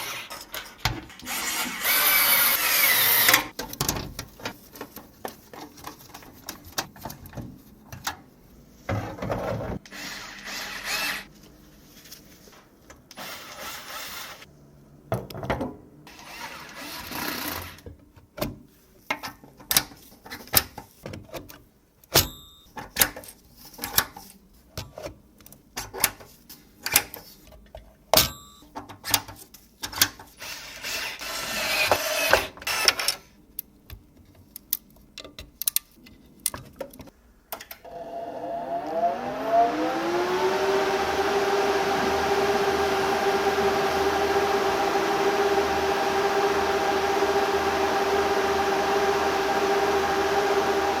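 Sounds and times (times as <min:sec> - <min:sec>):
cooling fans whirring: 0:37.8 - 0:51.0.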